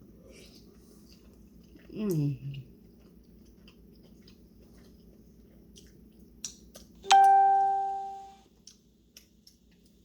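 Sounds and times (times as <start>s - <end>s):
bell-like ding: 7.0s - 8.4s.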